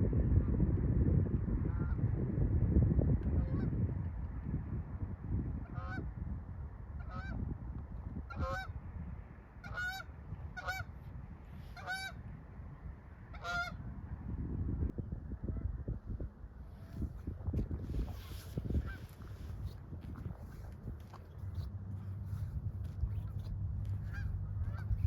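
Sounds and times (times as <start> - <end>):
steady low rumble: 0.0 - 25.0
goose honking: 8.3 - 8.7, 9.6 - 10.9, 11.7 - 12.2, 13.3 - 13.8, 23.9 - 25.0.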